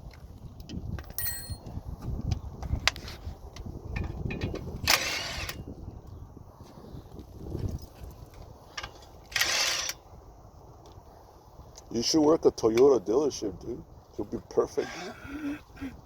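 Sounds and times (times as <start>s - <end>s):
tools clicking and knocking: 1.0s - 1.7s.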